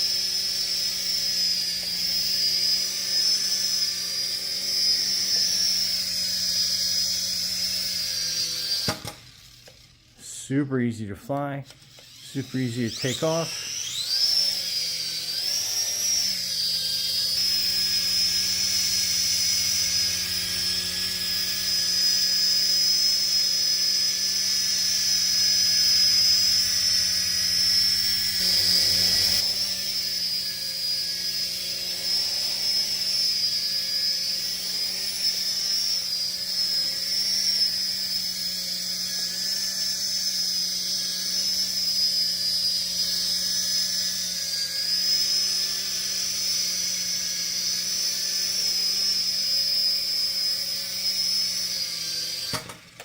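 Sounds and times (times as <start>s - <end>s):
toy helicopter rotors whining: 0.0s - 53.0s.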